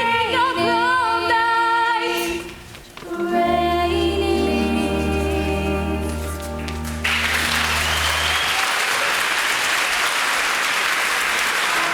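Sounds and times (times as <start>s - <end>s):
held music chord: 3.2s - 8.2s
audience applause: 6.8s - 11.9s.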